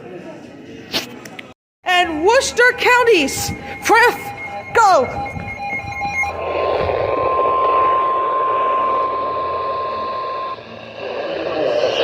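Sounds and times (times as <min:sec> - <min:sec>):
steady warning alarm tone: 0:02.0 - 0:11.0.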